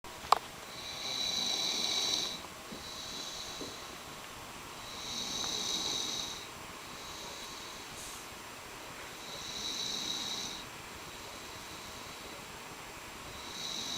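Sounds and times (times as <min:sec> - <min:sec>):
breathing: 0:00.7 - 0:04.0, 0:04.8 - 0:08.3, 0:09.0 - 0:12.5
person snoring: 0:00.7 - 0:04.0, 0:04.8 - 0:08.0, 0:09.2 - 0:12.5, 0:13.3 - 0:13.9.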